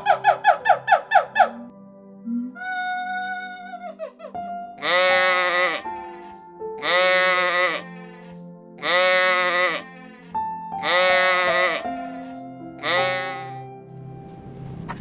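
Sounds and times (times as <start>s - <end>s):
background music: 0.0s - 15.0s
loud bleats: 4.8s - 13.6s.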